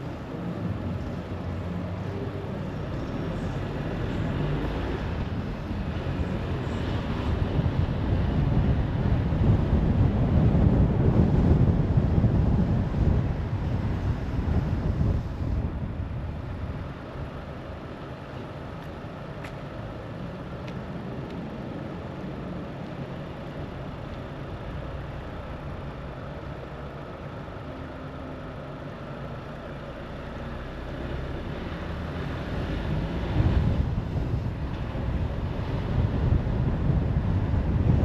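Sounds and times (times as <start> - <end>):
car engine and tyre noise: 0.0 - 38.0.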